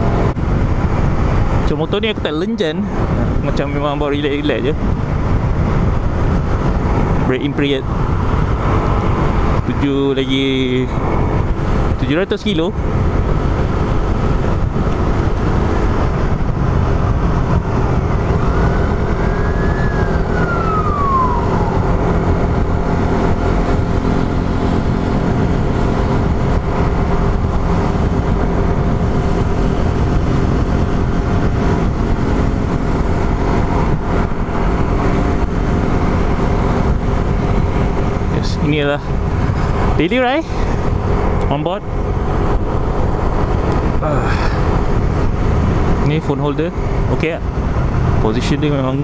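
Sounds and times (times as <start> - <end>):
motorcycle engine at low revs: 0.0 - 49.0
high rising and falling tone: 12.8 - 38.4.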